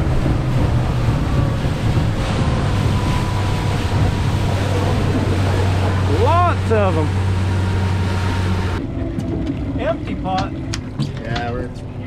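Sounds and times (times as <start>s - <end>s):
boat engine humming: 0.0s - 12.0s
water noise: 0.0s - 12.0s
wind: 0.0s - 12.0s.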